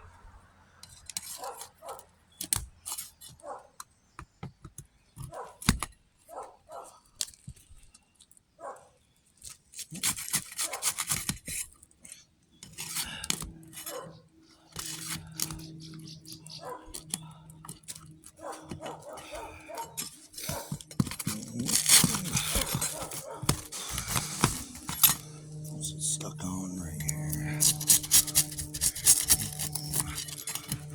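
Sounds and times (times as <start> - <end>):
roof shingles being torn loose: 9.7 - 11.8, 16.8 - 25.4, 27.6 - 30.9
steady low hum: 13.1 - 30.9.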